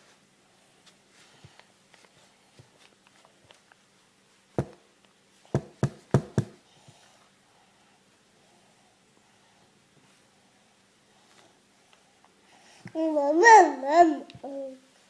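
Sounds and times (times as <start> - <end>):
sharp knocks: 5.6 - 6.6.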